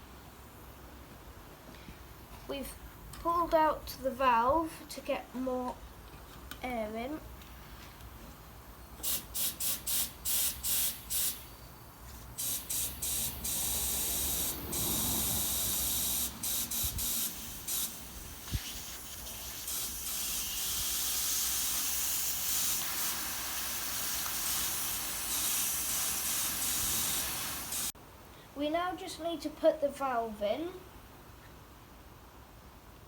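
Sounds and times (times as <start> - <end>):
compressed air hissing into tyre: 9.0 - 11.7, 12.4 - 28.0.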